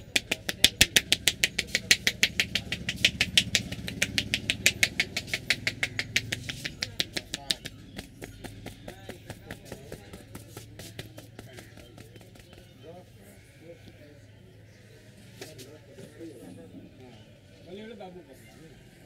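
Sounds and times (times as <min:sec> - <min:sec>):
rapid hand slaps on head: 0:00.0 - 0:12.7.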